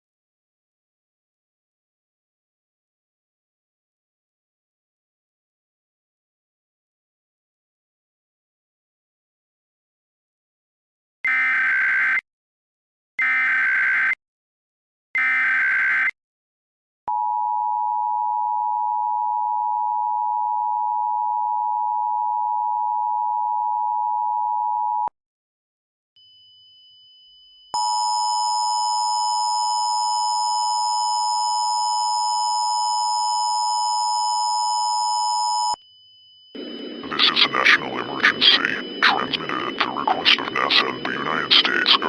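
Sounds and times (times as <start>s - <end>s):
harsh attention tone: 36.6s - 42.0s
two-tone attention signal: 36.6s - 42.0s
warbling data burst: 36.6s - 42.0s.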